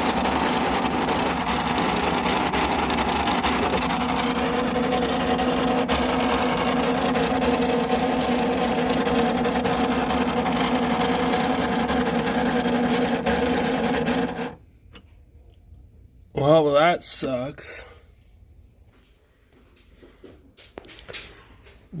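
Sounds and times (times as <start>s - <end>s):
fan humming and rattling: 0.0s - 15.4s.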